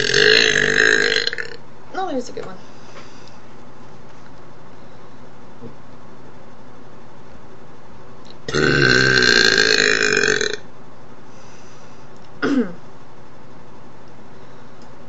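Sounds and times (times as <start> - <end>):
person burping: 0.0 - 1.6, 8.5 - 10.6, 12.4 - 12.8.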